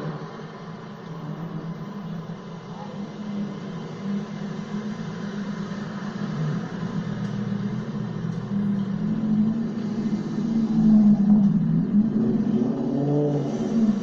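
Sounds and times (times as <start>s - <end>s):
traffic noise: 0.0s - 14.0s.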